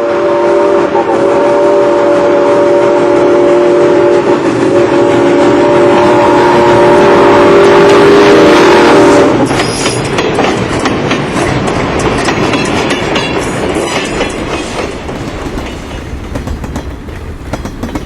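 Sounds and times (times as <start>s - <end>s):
locomotive chime horn: 0.0s - 9.5s
running train: 0.0s - 18.0s.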